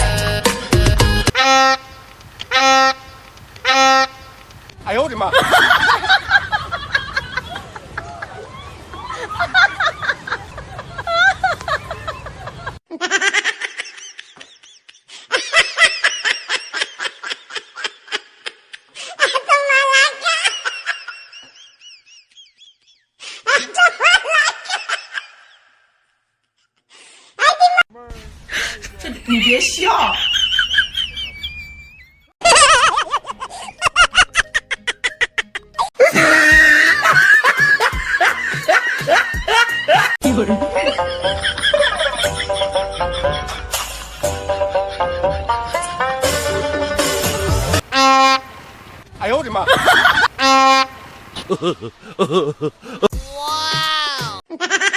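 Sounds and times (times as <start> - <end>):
loud warbling tone: 1.4 - 4.4
laughter: 5.1 - 25.9, 28.6 - 45.2, 49.6 - 50.3, 51.5 - 53.2, 54.5 - 54.9
rapid high-pitched laughter: 30.3 - 40.2.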